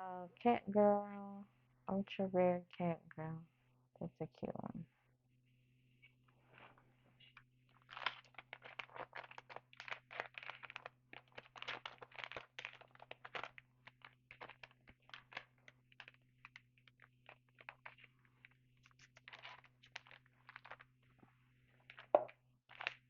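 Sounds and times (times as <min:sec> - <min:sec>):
trading cards rustling and clicking: 0:07.7 - 0:20.9, 0:21.8 - 0:23.0.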